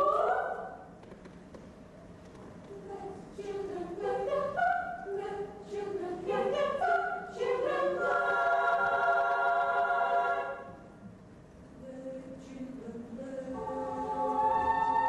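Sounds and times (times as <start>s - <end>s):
children's choir singing: 0.0s - 0.8s, 2.8s - 10.8s, 12.7s - 15.0s.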